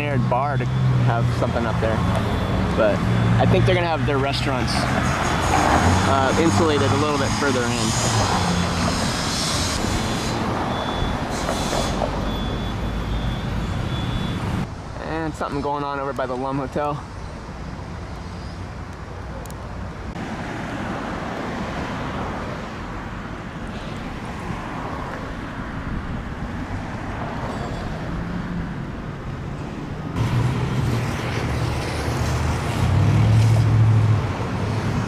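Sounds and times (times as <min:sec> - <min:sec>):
vehicle engine hum: 0:00.0 - 0:15.0, 0:24.6 - 0:35.0
road traffic passing: 0:00.0 - 0:35.0.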